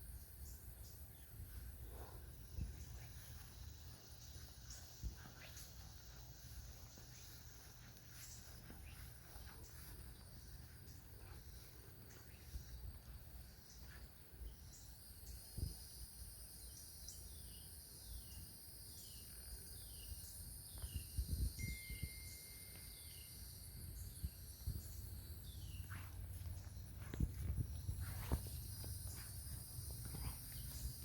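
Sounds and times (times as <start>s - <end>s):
insects droning: 0.0s - 31.0s
low footstep thumps: 25.8s - 31.0s.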